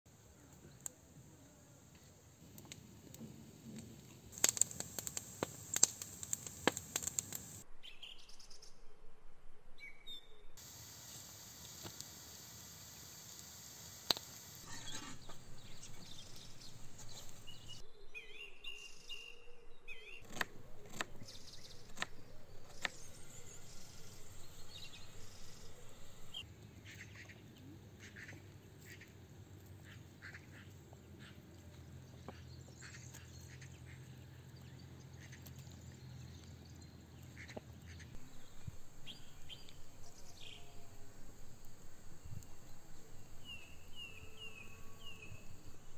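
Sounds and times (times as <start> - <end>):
birds calling: 14.6 - 17.8
low steady hum: 20.4 - 26.5, 38.2 - 45.9.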